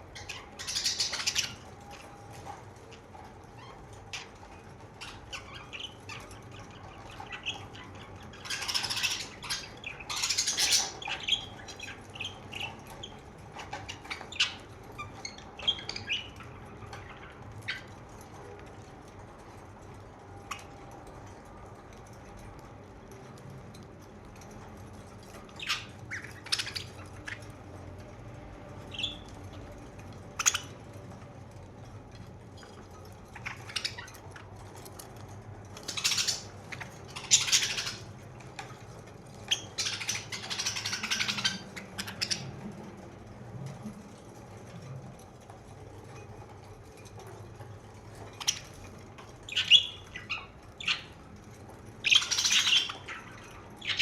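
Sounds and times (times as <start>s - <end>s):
budgerigars chirping and squawking: 0.1s - 18.2s, 20.4s - 20.8s, 24.3s - 27.6s, 28.8s - 31.2s, 32.6s - 43.1s, 46.2s - 54.0s.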